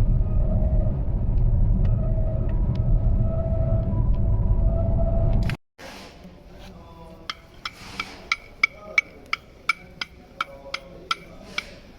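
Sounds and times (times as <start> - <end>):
vehicle rumble: 0.0 - 5.6.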